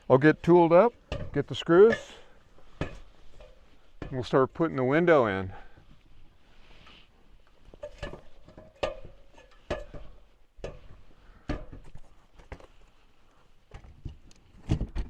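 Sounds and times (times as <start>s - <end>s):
tools and materials knocking: 7.8s - 12.6s.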